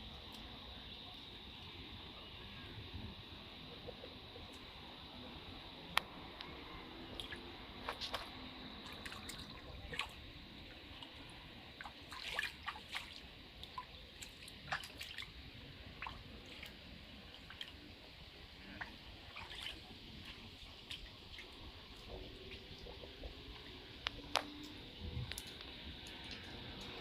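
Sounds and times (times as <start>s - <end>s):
faint steady hiss: 0.0s - 27.0s.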